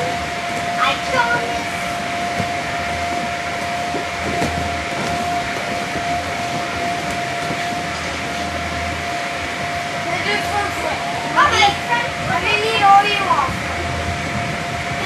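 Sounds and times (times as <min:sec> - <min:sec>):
electric blower fan drone: 0:00.0 - 0:15.0.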